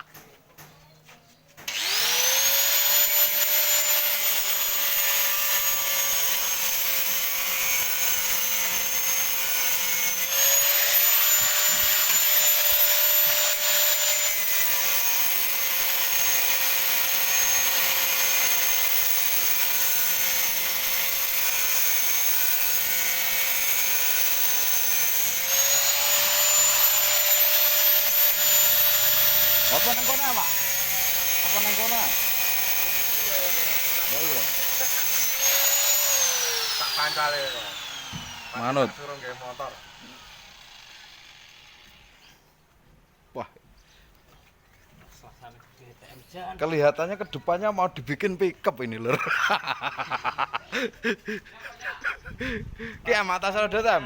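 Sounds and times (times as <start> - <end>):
angle grinder cutting sheet metal: 1.6 - 42.4.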